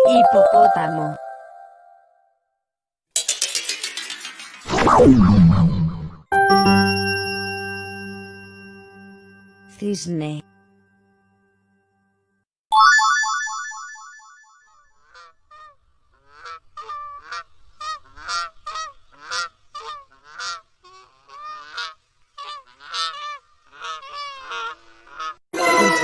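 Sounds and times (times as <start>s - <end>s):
bright chime: 6.4s - 10.4s, 12.8s - 14.5s, 25.6s - 26.0s
swan honking: 15.0s - 26.0s.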